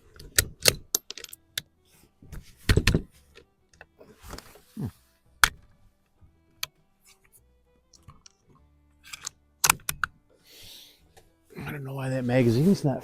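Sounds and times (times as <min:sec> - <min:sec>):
rifle bolt clicking: 0:09.0 - 0:10.2.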